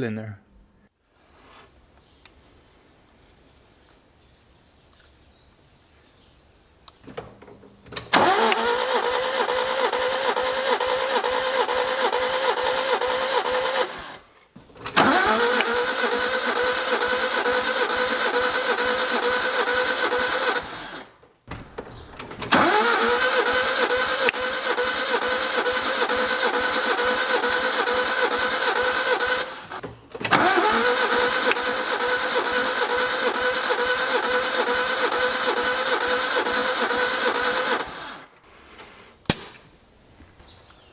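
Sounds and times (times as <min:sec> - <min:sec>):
starter motor cranking: 0:07.9 - 0:38.9.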